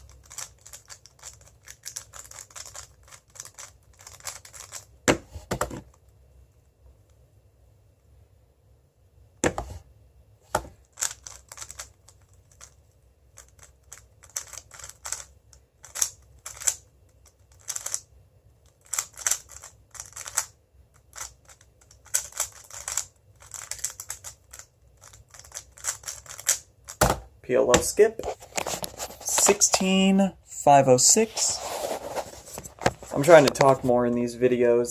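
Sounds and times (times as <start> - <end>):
plastic cube clicking and clacking: 0.0 - 4.9, 10.6 - 12.8, 13.4 - 18.0, 18.6 - 27.1.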